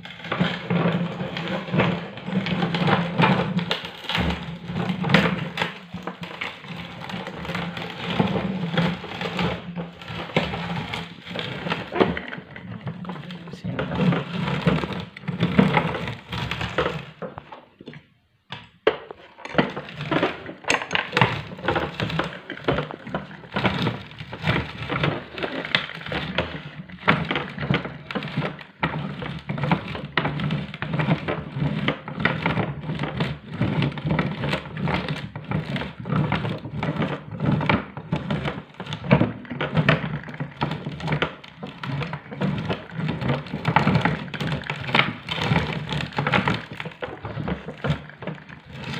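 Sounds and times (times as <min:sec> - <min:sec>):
meat grinder hum: 0:00.0 - 0:18.0, 0:19.0 - 0:48.9
candy cracking and crunching: 0:32.4 - 0:48.9.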